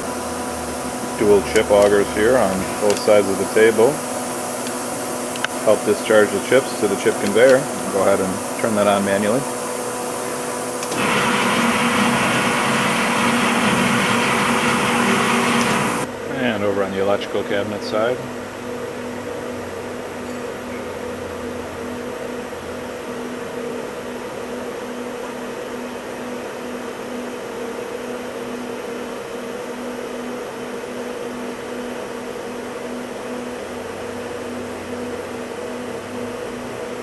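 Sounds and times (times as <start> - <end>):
electric motor hum: 0.0 - 16.1
fan-like rush: 10.5 - 16.1.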